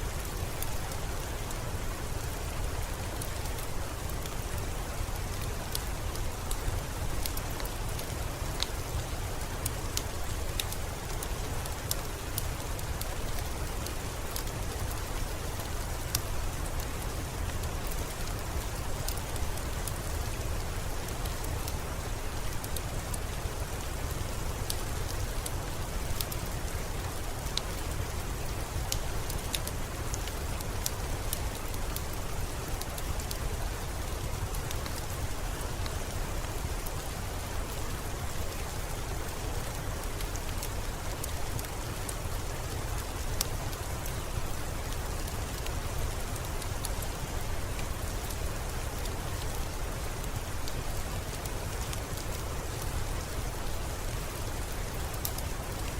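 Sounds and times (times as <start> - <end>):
steady rain falling: 0.0 - 55.9.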